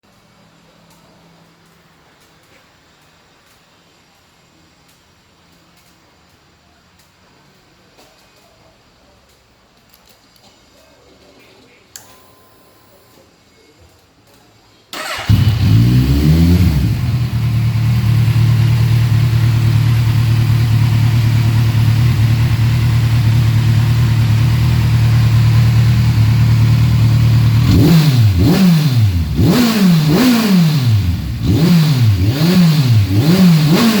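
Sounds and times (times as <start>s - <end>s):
motorcycle engine starting: 14.9s - 34.0s
motorcycle engine idling: 15.0s - 34.0s
motorcycle engine revving: 15.0s - 34.0s.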